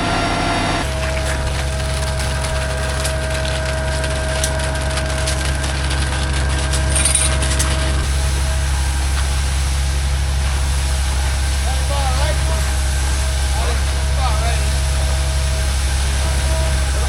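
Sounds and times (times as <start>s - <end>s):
faint steady whine: 0.0s - 17.0s
heavy diesel engine running: 0.0s - 17.0s.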